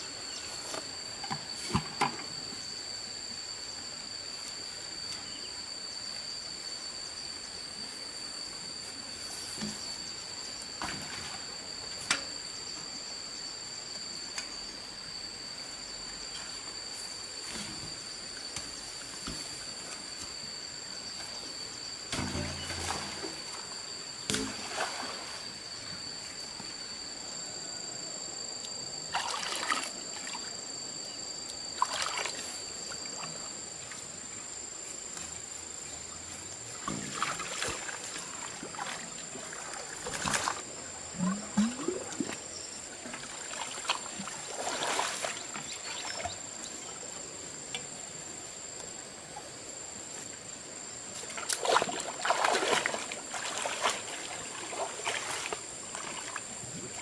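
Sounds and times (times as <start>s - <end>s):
steady high-pitched whine: 0.0s - 57.0s
water splashing and sloshing: 22.1s - 25.7s, 29.1s - 30.6s, 31.7s - 34.0s, 36.8s - 47.1s, 51.1s - 57.0s.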